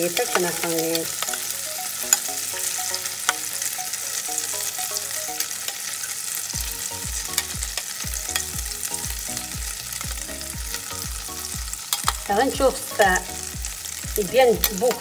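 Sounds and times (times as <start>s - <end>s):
bread frying in butter: 0.0s - 15.0s
music with bass beat: 6.6s - 14.7s.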